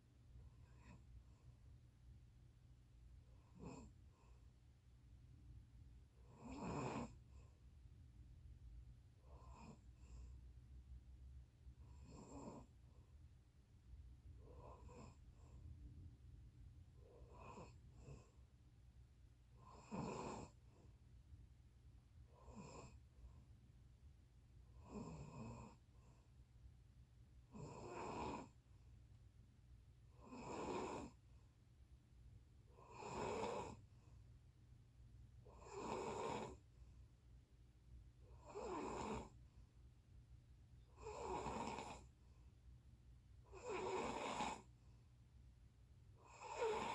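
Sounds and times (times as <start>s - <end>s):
low steady hum: 0.0s - 6.4s, 7.1s - 19.7s, 20.5s - 24.9s, 25.7s - 27.6s, 28.5s - 30.2s, 31.1s - 32.9s, 33.8s - 35.5s, 36.6s - 38.4s, 39.3s - 41.0s, 42.0s - 43.6s, 44.7s - 46.3s
person snoring: 38.4s - 39.3s, 41.0s - 42.1s, 43.5s - 44.7s, 46.2s - 46.9s.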